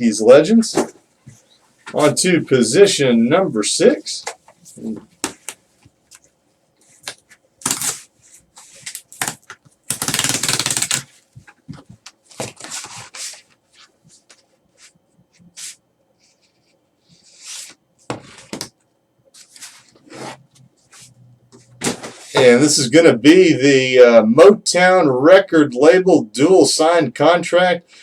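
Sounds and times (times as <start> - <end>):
loud packaging rustle: 8.8 - 11.3.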